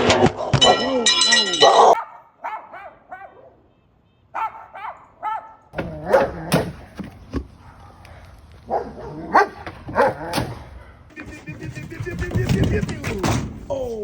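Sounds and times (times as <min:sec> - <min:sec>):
dog yipping: 0:01.7 - 0:03.6, 0:04.4 - 0:06.5
dog barking: 0:01.7 - 0:03.7, 0:04.3 - 0:06.8, 0:07.6 - 0:11.0.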